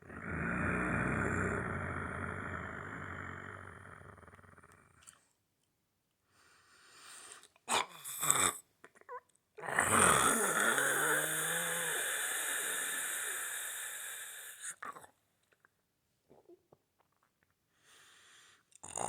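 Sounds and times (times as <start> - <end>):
man snoring: 0.0 - 4.8, 7.7 - 8.6, 9.6 - 14.9, 18.8 - 19.0.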